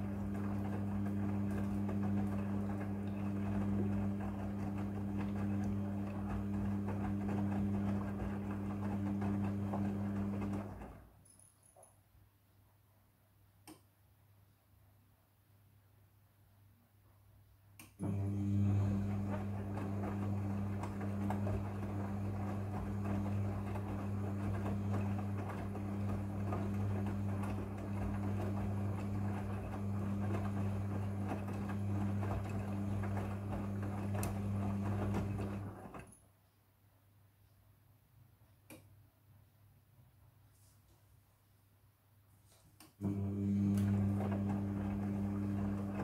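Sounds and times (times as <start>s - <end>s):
washing machine motor humming: 0.0s - 11.1s, 18.0s - 36.1s, 43.0s - 46.0s.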